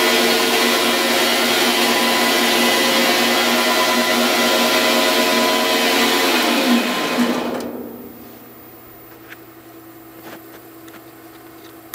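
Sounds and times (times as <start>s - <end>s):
metal lathe motor whine: 0.0s - 9.2s.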